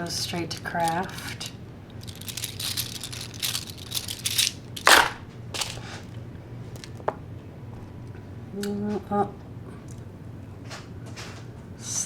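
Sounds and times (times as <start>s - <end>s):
jewelry clattering: 0.3s - 7.0s
jewelry rustling and clinking: 0.3s - 7.1s.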